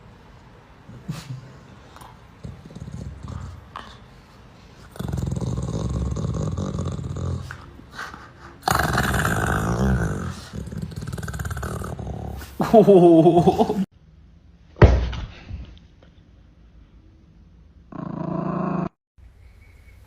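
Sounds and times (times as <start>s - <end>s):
dog growling: 1.8s - 4.1s, 4.8s - 7.8s, 8.4s - 12.6s, 17.9s - 19.0s.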